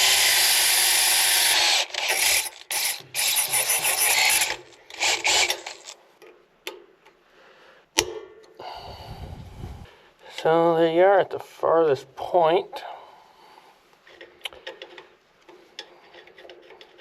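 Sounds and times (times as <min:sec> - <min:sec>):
power drill grinding: 0:00.0 - 0:06.0.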